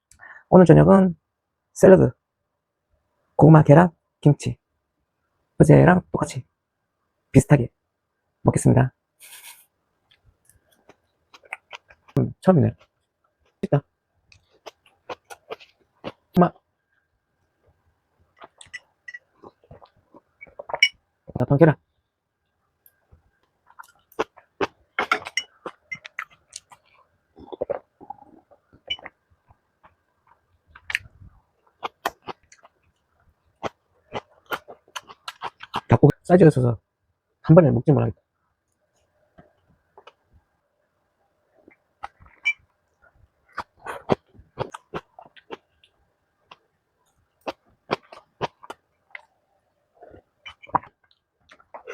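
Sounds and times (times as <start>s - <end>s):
person chewing food: 9.3s - 12.2s, 14.3s - 16.6s, 17.4s - 21.4s, 22.9s - 35.9s, 38.8s - 40.4s, 41.5s - 51.9s.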